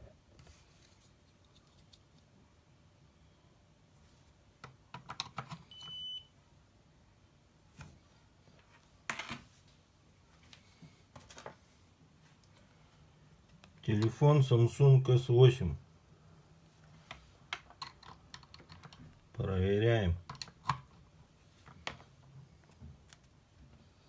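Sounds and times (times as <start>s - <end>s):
plastic handling clicks and knocks: 4.6s - 5.6s, 17.5s - 19.2s, 20.2s - 23.2s.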